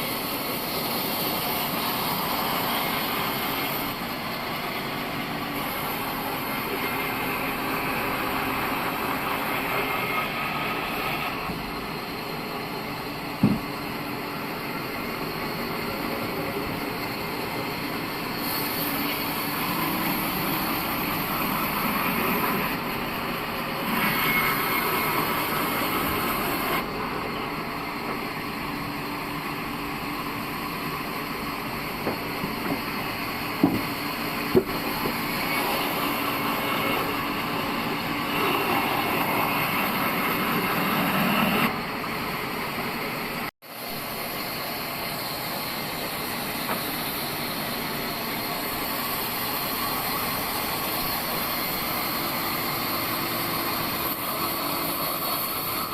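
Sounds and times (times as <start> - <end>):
band saw cutting log: 0.0 - 11.6, 14.4 - 41.8, 44.1 - 55.9
sharp knocks: 13.4 - 13.7, 33.6 - 35.2.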